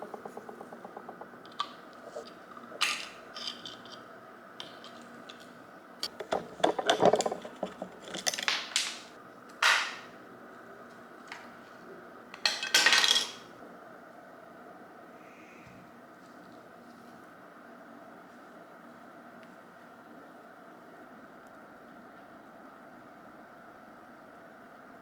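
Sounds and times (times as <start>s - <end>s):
metal tools clinking and scraping: 1.5s - 4.0s.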